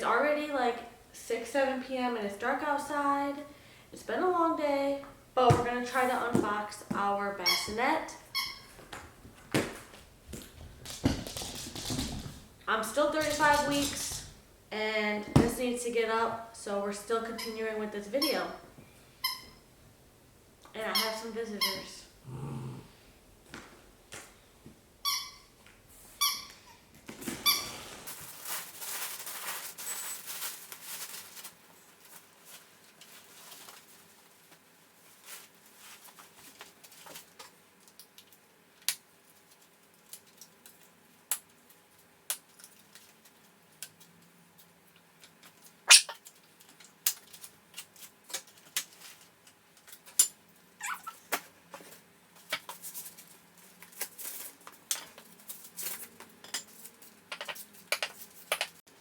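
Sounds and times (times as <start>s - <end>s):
rustling: 25.9s - 37.4s
dog whining: 45.9s - 46.1s, 50.8s - 51.2s.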